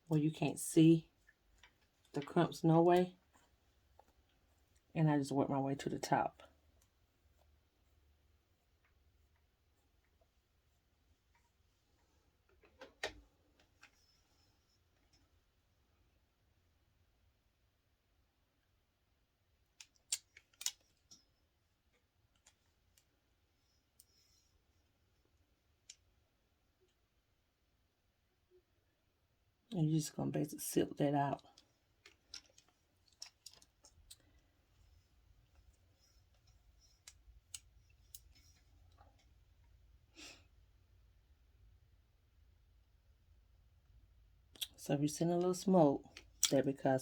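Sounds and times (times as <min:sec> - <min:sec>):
plastic clicks and snaps: 0:19.8 - 0:21.2.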